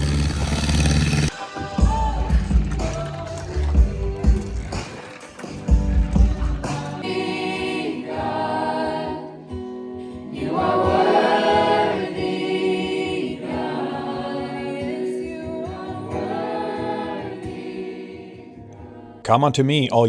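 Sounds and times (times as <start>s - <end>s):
gospel choir singing: 1.0s - 19.2s.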